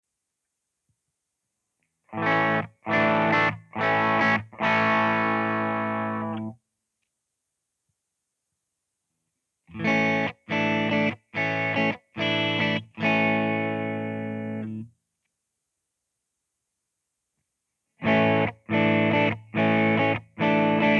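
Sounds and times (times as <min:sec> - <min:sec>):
electric guitar chords: 0:02.1 - 0:06.6, 0:09.7 - 0:14.9, 0:18.0 - 0:20.9.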